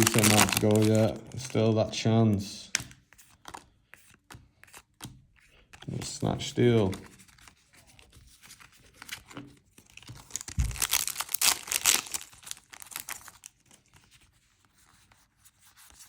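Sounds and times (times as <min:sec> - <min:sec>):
foil wrapper tearing and crinkling: 0:00.0 - 0:01.6, 0:09.9 - 0:13.7.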